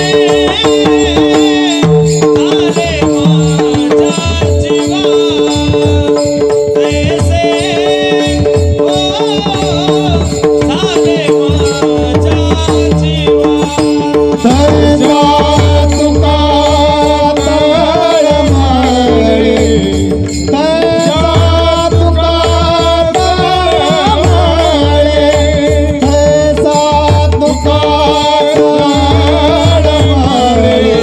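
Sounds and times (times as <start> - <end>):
hand drum beating rhythm: 0.0 - 31.0
person singing: 0.0 - 31.0.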